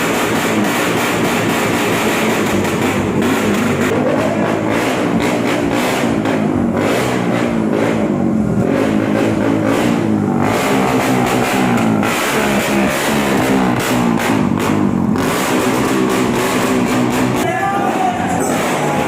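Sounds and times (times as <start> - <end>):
loud rock music: 9.6 - 19.0.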